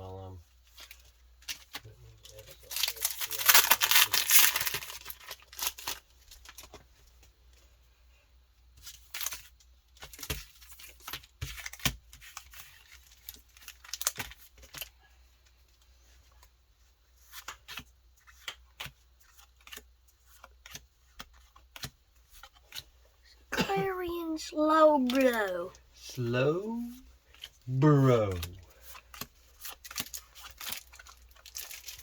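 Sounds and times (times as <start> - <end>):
wrapper crinkling and cards clicking: 0.7 - 6.8, 8.8 - 14.9, 17.2 - 23.0, 25.0 - 25.3, 26.8 - 32.0
foil pack tearing: 2.4 - 6.0.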